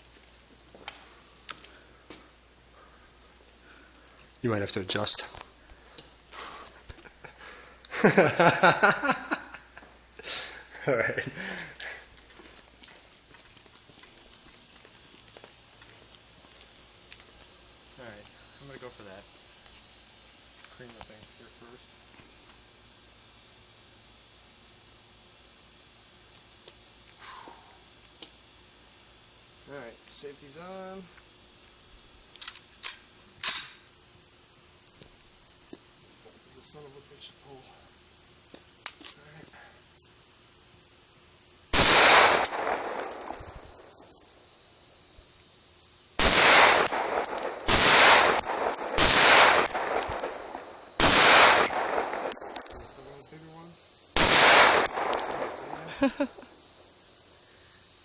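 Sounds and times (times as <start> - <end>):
high-pitched insect chorus: 0.0 - 58.0
rifle shots with echo: 41.8 - 43.9, 46.2 - 53.2, 54.1 - 55.9.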